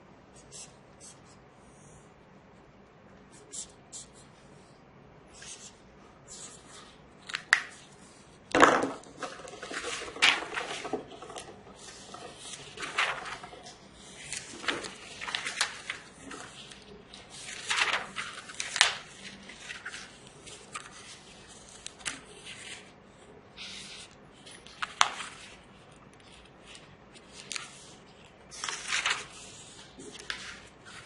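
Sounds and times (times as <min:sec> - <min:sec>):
marker pen scratching on paper: 0:00.4 - 0:02.0
paper being handled: 0:05.3 - 0:22.9, 0:23.6 - 0:31.0.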